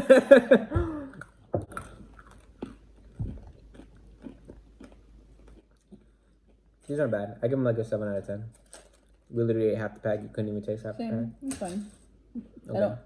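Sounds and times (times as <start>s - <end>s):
chewing and crunching candies: 1.1s - 7.0s.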